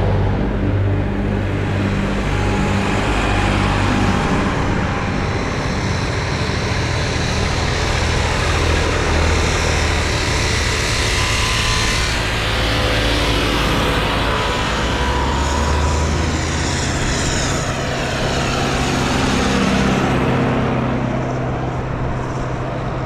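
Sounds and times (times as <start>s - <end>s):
tractors driving past: 0.0s - 23.0s.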